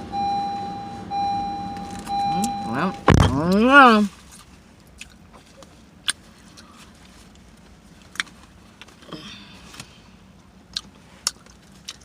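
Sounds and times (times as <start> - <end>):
quiet chewing: 4.3 - 9.0, 10.7 - 12.0.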